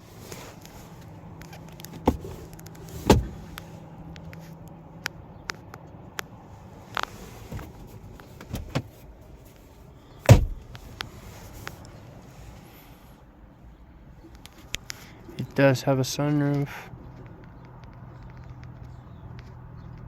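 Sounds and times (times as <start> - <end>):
knocks and thumps in car cabin: 1.9 - 3.6, 7.5 - 9.0, 10.2 - 10.9.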